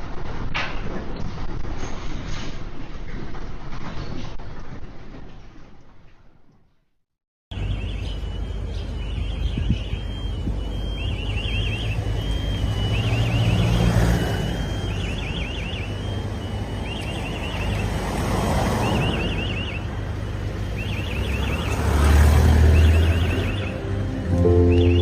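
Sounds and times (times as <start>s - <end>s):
electronic alarm warbling: 7.5s - 25.0s.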